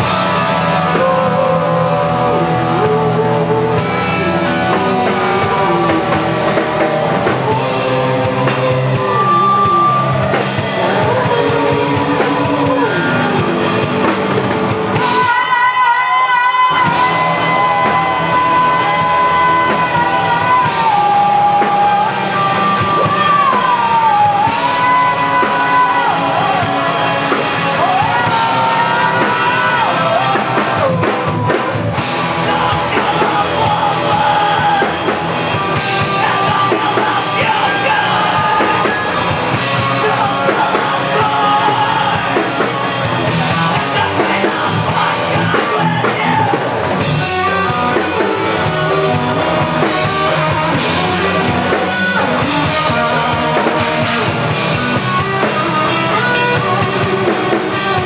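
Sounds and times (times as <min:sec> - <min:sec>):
drum kit: 0:00.0 - 0:58.0
electric guitars: 0:00.0 - 0:58.0
person singing: 0:00.0 - 0:58.0.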